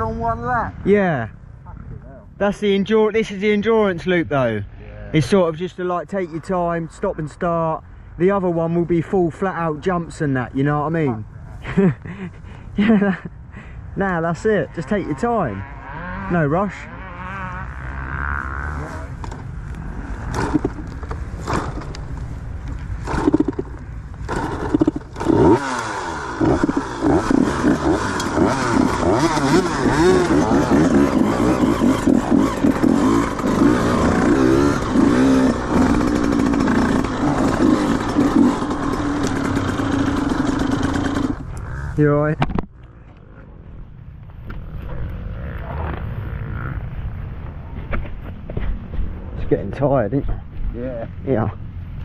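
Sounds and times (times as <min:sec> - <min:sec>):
dirt bike engine revving: 0:14.2 - 0:22.3, 0:22.9 - 0:43.4, 0:44.5 - 0:47.7
knocks and clatters: 0:20.3 - 0:25.3.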